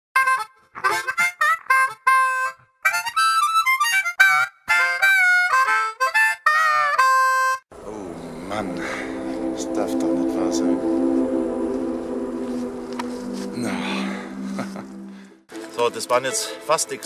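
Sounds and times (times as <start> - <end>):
solo melody: 7.4 - 15.8.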